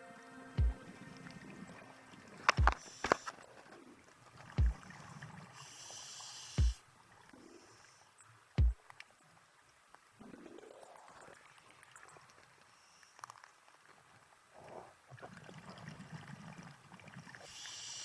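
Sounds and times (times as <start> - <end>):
deep underwater thump: 0.6 - 0.8, 2.6 - 2.8, 4.6 - 4.8, 8.6 - 8.8
sharp clicks: 2.5 - 3.3
hiss: 2.8 - 3.3, 5.6 - 6.8, 17.4 - 18.0.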